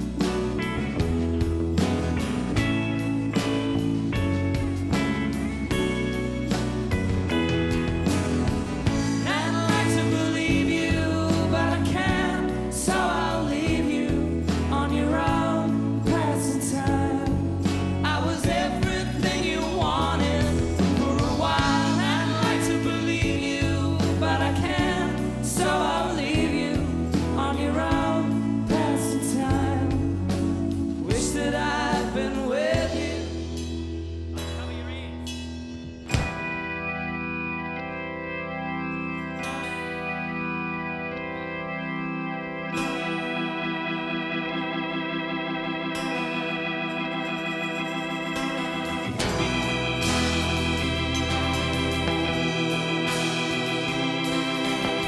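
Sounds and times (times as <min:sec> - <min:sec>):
held guitar and keyboard chords: 0:00.0 - 0:55.0
rock band playing: 0:00.0 - 0:55.0
person singing: 0:08.9 - 0:33.5.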